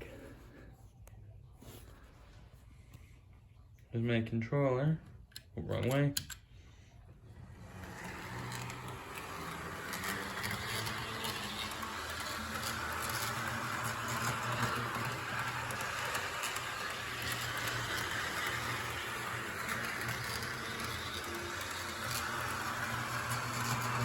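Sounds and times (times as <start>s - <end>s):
electric motor whirring: 7.4s - 24.0s
wheels clicking over rails: 7.4s - 24.0s.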